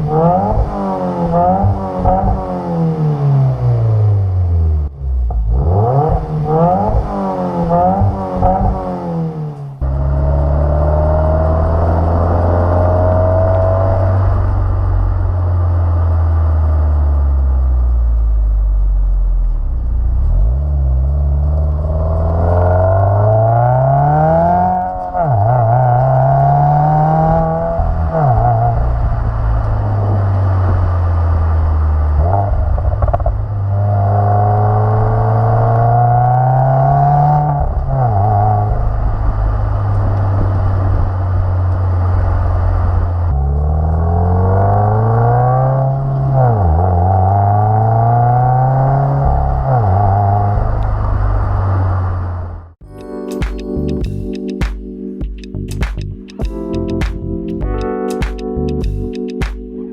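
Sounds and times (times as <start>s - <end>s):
car engine accelerating: 0.0s - 52.8s, 55.5s - 57.8s.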